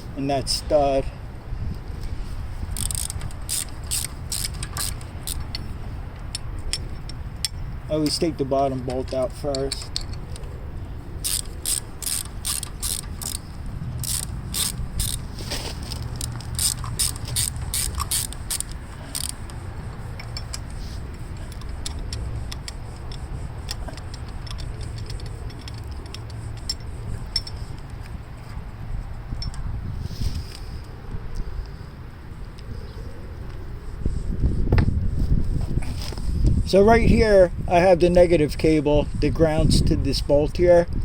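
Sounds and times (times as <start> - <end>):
steady low rumble: 0.0 - 41.0
socket ratchet clicking: 2.7 - 7.6, 11.2 - 28.2.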